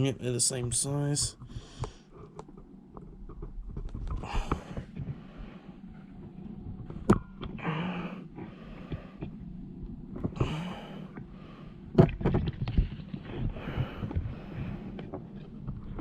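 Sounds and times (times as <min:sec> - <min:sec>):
person breathing heavily: 0:04.2 - 0:05.9, 0:07.6 - 0:09.4, 0:10.3 - 0:11.9, 0:13.4 - 0:15.0.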